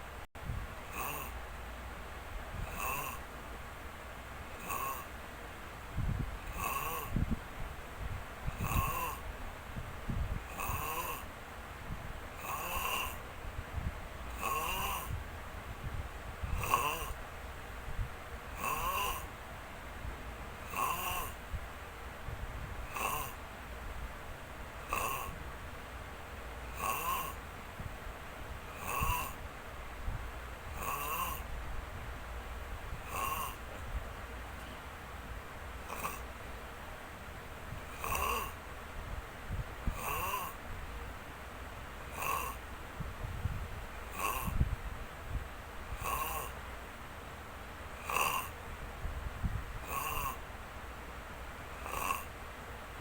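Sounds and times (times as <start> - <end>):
rhythmic snoring: 0.8 - 1.5, 2.5 - 3.4, 4.5 - 5.2, 6.0 - 7.4, 8.0 - 11.4, 12.0 - 13.3, 14.2 - 15.3, 15.9 - 17.2, 17.9 - 19.3, 20.6 - 21.5, 22.7 - 23.4, 24.8 - 25.4, 26.6 - 27.4, 28.7 - 29.4, 30.6 - 31.6, 32.9 - 33.8, 35.8 - 36.4, 37.7 - 38.7, 39.5 - 40.6, 42.1 - 42.7, 44.0 - 44.8, 45.9 - 46.6, 48.0 - 48.6, 49.5 - 50.5, 51.7 - 52.4.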